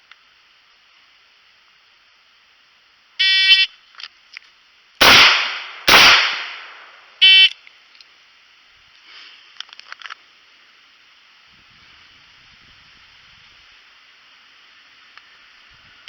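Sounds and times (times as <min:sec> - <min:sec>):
revolver gunshots: 0:05.0 - 0:07.1
shot timer beep: 0:07.2 - 0:07.6.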